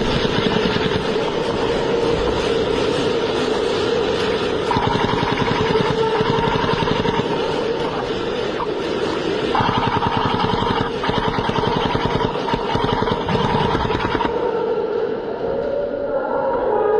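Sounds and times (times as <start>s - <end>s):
airsoft gun firing full auto: 0.0s - 1.2s, 4.7s - 14.3s.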